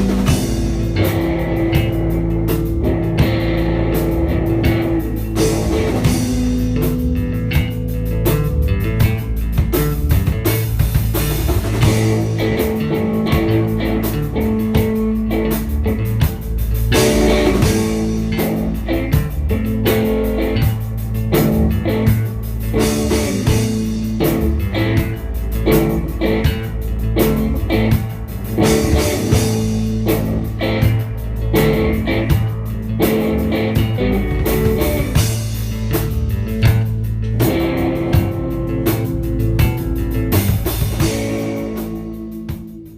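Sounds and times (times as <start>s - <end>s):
blues-rock music: 0.0s - 42.9s.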